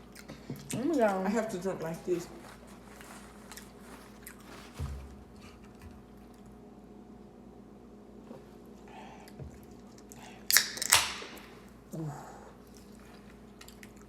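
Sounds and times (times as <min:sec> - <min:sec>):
drink can opening crack and hiss: 0:10.5 - 0:11.5.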